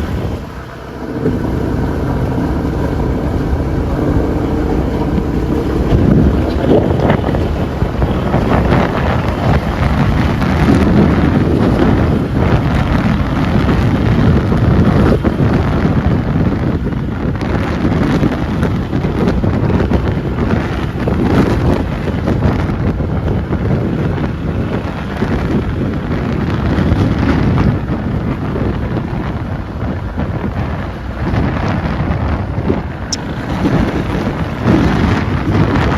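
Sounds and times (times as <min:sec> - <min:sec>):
wind buffeting microphone: 0:00.0 - 0:35.9.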